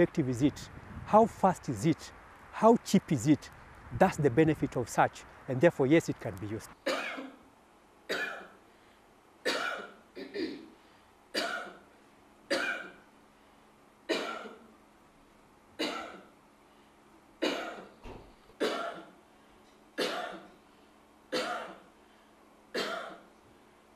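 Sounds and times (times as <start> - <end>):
person coughing: 6.8 - 7.4, 8.1 - 8.6, 9.4 - 10.8, 11.4 - 11.8, 12.5 - 13.0, 14.1 - 14.6, 15.8 - 16.3, 17.4 - 18.0, 18.6 - 19.2, 20.0 - 20.6, 21.3 - 21.8, 22.7 - 23.3.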